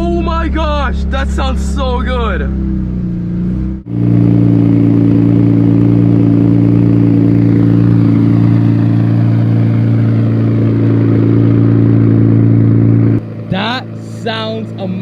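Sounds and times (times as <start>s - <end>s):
car exhaust drone: 0.0s - 15.0s.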